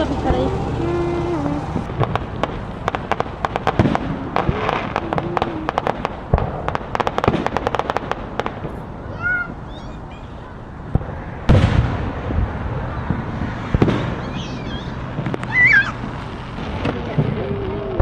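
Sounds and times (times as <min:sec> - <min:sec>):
faint voices: 0:00.0 - 0:01.9, 0:03.6 - 0:06.3, 0:08.6 - 0:11.3, 0:12.1 - 0:18.0
fireworks bangs and crackles: 0:00.0 - 0:18.0.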